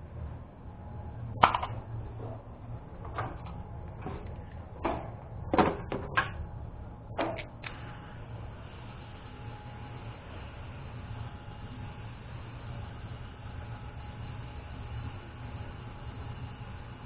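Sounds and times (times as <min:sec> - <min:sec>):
steady low hum: 0:00.0 - 0:17.0
objects knocking and clattering: 0:01.4 - 0:02.4, 0:03.0 - 0:06.4.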